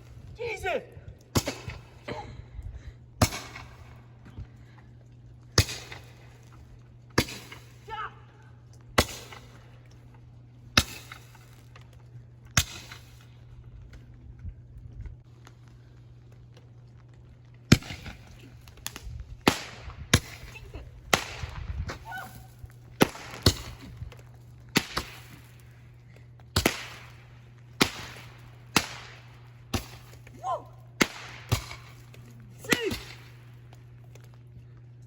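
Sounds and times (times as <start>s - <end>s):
fireworks bangs with hiss: 3.2s - 4.0s, 18.8s - 25.6s, 26.5s - 30.3s, 31.0s - 32.1s.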